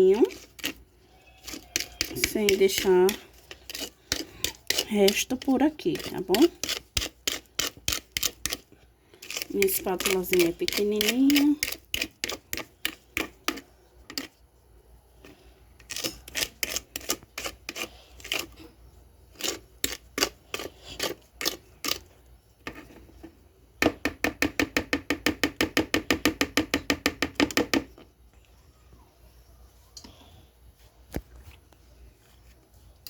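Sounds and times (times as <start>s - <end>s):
spatula scraping container: 0.0s - 14.4s, 15.2s - 23.4s
spatula tapping: 0.0s - 14.4s, 22.7s - 28.0s.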